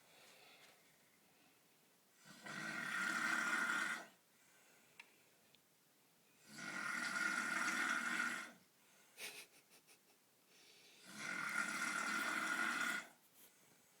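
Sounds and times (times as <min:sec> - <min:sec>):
faint breath sounds: 0:00.0 - 0:01.8, 0:04.3 - 0:05.5, 0:10.4 - 0:11.2
man snoring: 0:02.2 - 0:04.1, 0:06.4 - 0:08.6, 0:11.0 - 0:13.1.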